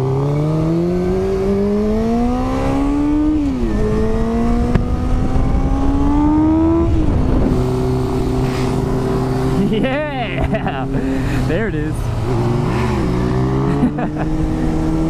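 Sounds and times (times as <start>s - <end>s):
motorcycle engine accelerating: 0.0s - 15.0s.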